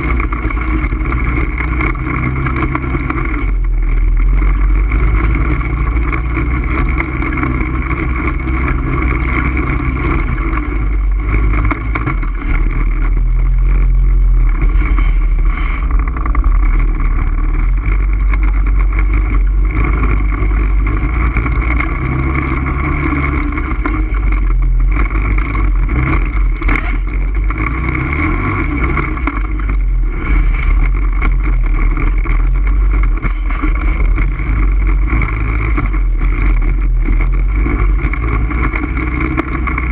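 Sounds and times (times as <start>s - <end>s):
all-terrain vehicle engine running: 0.0s - 39.9s.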